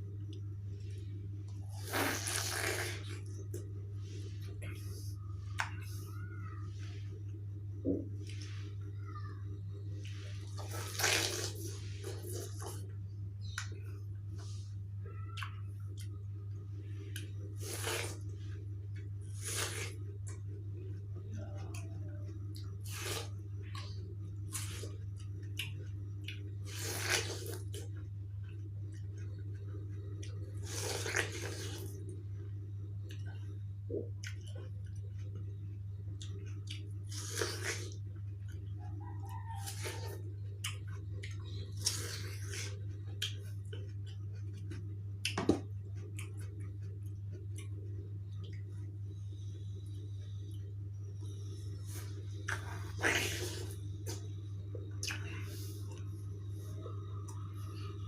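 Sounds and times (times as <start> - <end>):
steady low hum: 0.0 - 58.0
slurping bite: 1.7 - 3.2, 10.6 - 12.7
wet chewing of watermelon: 10.0 - 13.7, 17.1 - 20.4, 22.5 - 32.1, 33.0 - 48.9, 51.8 - 57.5
wet squishy watermelon bites: 28.6 - 32.1.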